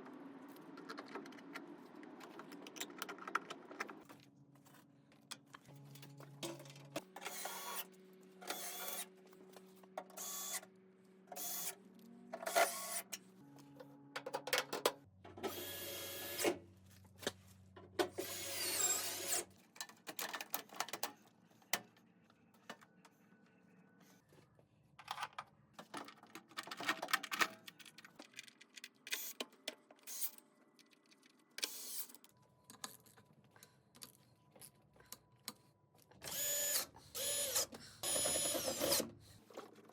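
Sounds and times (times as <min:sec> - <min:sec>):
power drill bursts: 0:36.3 - 0:39.1.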